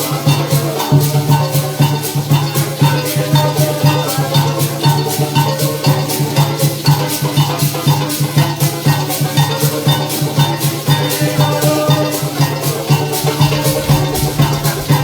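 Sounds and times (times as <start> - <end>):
pitched instruments playing: 0.0 - 15.0
shakers beat: 0.0 - 15.0
pulsing bass line: 12.6 - 15.0.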